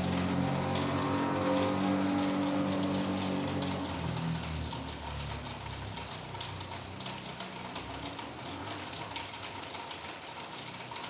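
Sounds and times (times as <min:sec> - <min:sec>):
low engine hum: 0:00.0 - 0:07.0
steady rain: 0:00.0 - 0:11.0.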